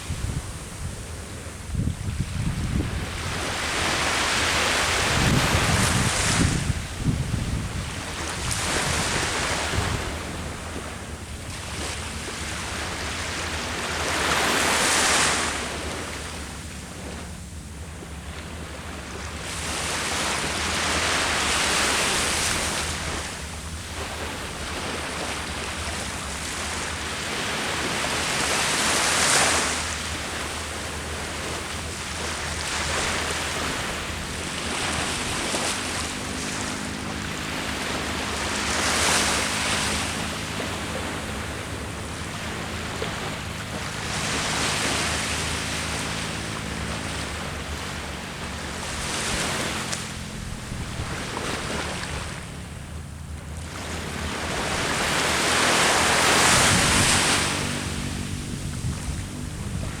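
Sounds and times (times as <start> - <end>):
ocean waves breaking: 0.0 - 60.0.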